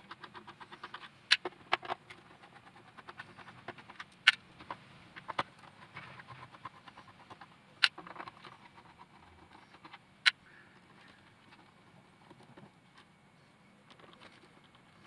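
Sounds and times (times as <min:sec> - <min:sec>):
sharp plastic clicks: 0:00.1 - 0:05.7.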